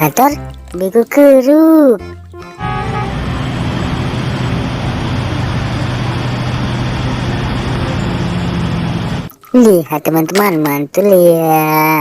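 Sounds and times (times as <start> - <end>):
motor running with low hum: 2.7 - 9.3.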